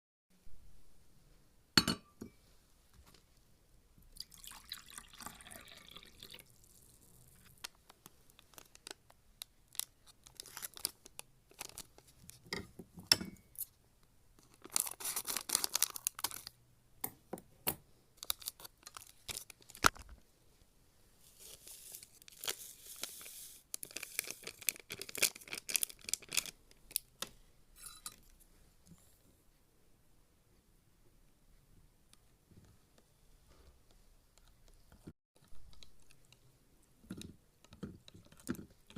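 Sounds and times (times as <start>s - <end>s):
glass cups and utensils clinking: 1.8s - 2.4s.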